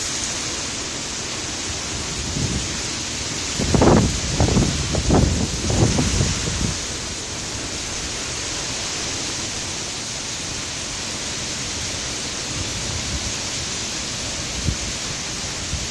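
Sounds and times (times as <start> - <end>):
heavy rain hissing: 0.0 - 15.9
wind gust buffeting microphone: 1.7 - 7.2, 14.4 - 15.9.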